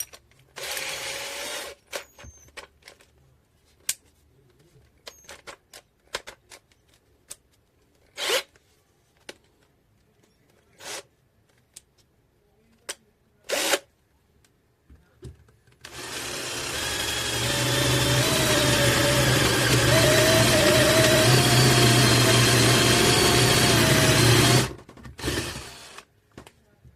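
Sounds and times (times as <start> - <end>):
cordless drill motor whining: 15.9 - 26.0.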